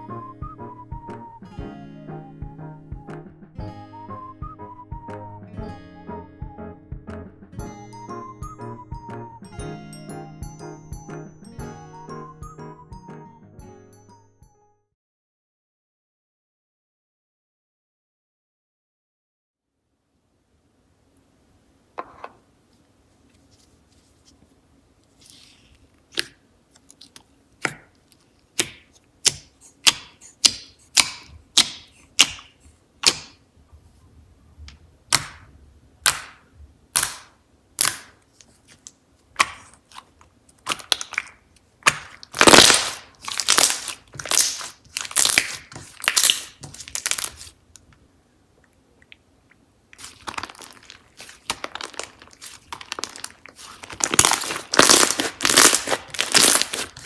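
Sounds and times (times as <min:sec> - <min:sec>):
slime popping clicks: 0:37.0 - 0:38.1.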